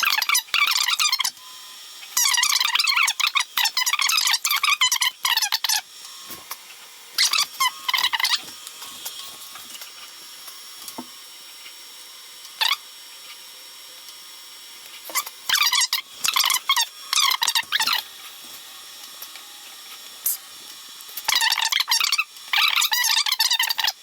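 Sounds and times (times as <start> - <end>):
stepper motors whining: 0.0 - 24.0.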